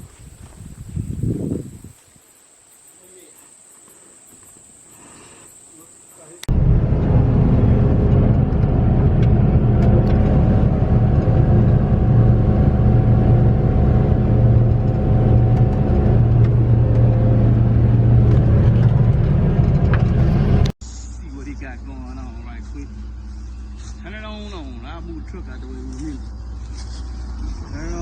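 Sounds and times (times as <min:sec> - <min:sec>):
combine harvester diesel engine running: 0:06.5 - 0:20.8, 0:21.4 - 0:28.0.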